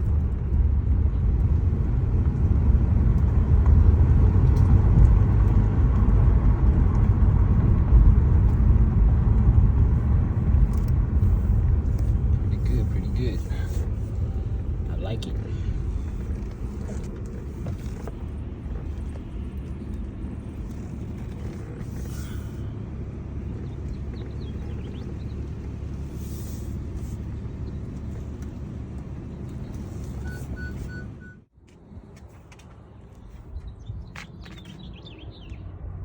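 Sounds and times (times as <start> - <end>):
road and engine rumble in car: 0.0 - 36.0.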